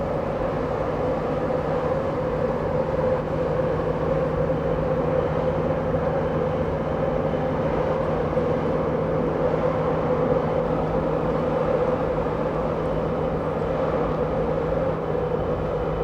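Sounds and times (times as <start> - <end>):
ship engine drone: 0.0 - 16.0.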